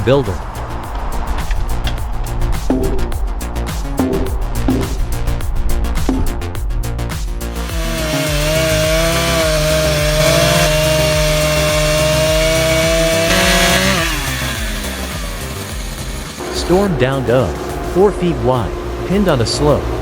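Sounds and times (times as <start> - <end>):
chainsaw cutting wood: 7.6 - 16.6.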